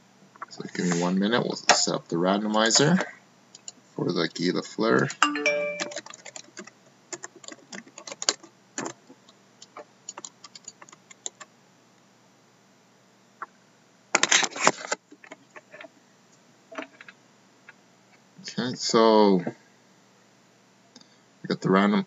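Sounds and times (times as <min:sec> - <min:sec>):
keyboard typing: 0:05.2 - 0:09.0, 0:09.6 - 0:11.5.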